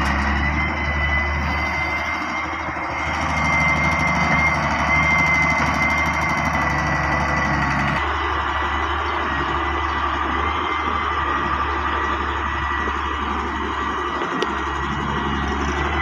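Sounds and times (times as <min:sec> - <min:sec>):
diesel engine running: 0:00.0 - 0:16.0
high steady whine: 0:00.0 - 0:16.0
low engine note: 0:00.0 - 0:16.0.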